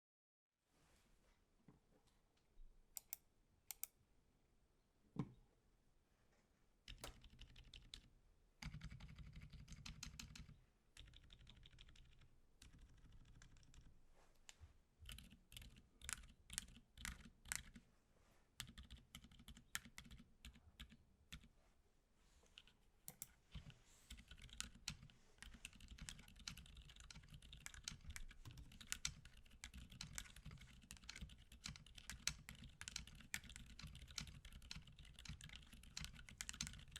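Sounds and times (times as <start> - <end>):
muted keyboard typing: 6.9 - 13.9, 15.0 - 17.8, 18.6 - 21.5, 22.6 - 36.9.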